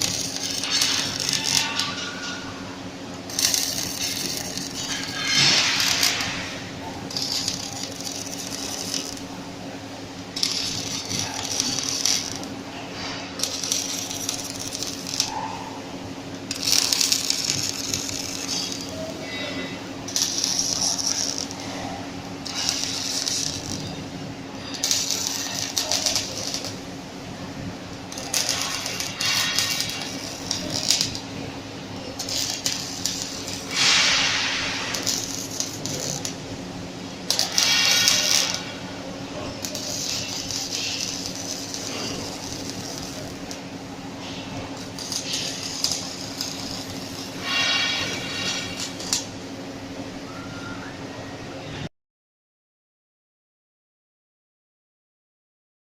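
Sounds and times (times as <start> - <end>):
metallic rattling and clinking: 0.0 - 2.6, 3.3 - 9.3, 10.4 - 15.4, 28.1 - 31.3, 37.3 - 38.8
machine humming: 0.0 - 51.5.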